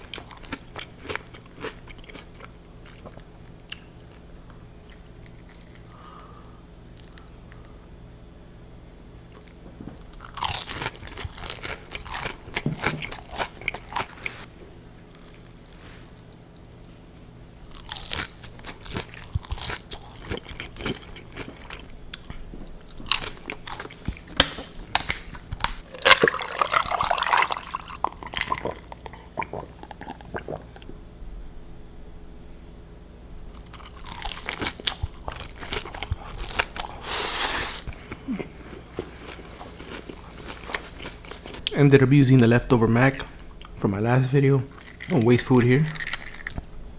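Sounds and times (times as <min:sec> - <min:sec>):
quiet chewing: 0:00.0 - 0:08.0, 0:33.5 - 0:41.8
crunchy biting of fried food: 0:10.2 - 0:14.2, 0:17.6 - 0:26.0, 0:33.5 - 0:41.6.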